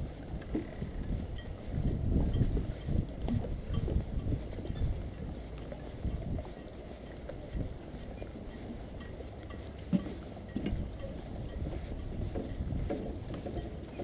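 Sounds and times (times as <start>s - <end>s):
wind buffeting microphone: 0.0s - 14.0s
bicycle rattles and knocks: 9.7s - 14.0s.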